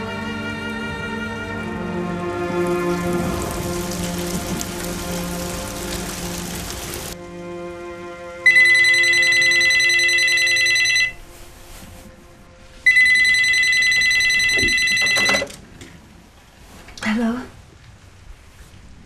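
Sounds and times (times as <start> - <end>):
telephone ringing: 8.5 - 11.2, 12.9 - 15.6.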